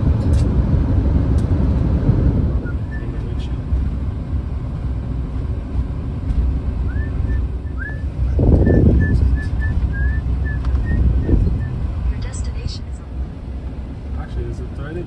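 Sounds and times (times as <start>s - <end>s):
road and engine rumble: 0.0s - 15.0s.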